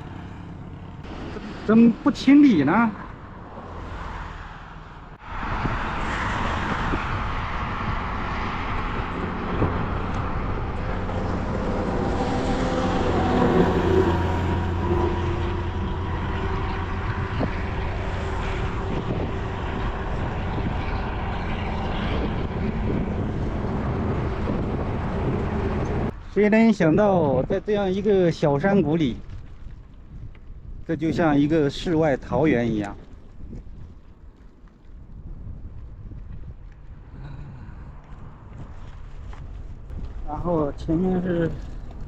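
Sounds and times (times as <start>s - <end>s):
heavy vehicle engine: 0.0s - 7.3s, 8.6s - 26.1s
vehicles passing on highway: 0.0s - 26.2s, 26.8s - 42.0s.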